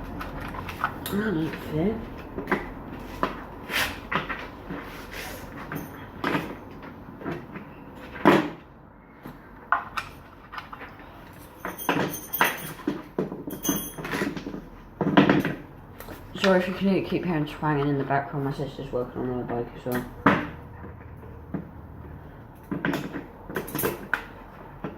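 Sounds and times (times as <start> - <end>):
metal tools clinking and knocking: 11.3 - 14.5, 22.9 - 24.2
ringing metal clanks: 13.5 - 14.2.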